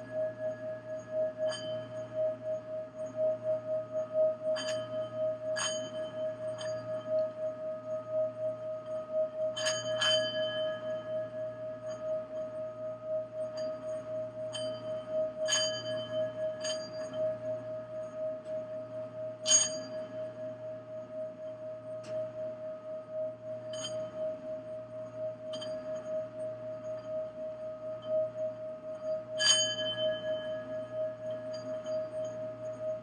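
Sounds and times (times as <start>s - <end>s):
singing bowl ringing tone: 0.0s - 33.0s.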